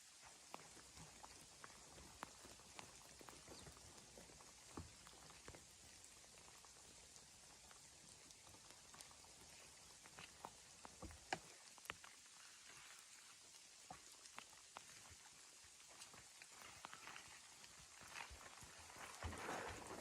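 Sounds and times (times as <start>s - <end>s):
soft steady hiss: 0.0s - 20.0s
light ticks and taps: 0.3s - 12.3s.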